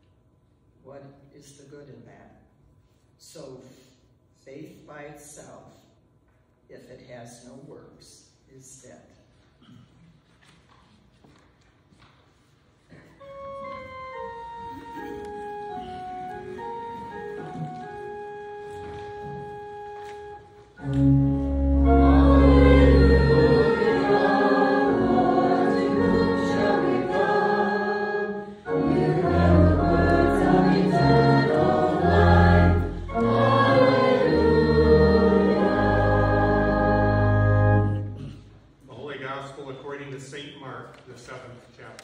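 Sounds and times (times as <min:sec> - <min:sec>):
organ playing: 0:13.2 - 0:38.3
congregation singing: 0:13.2 - 0:38.4.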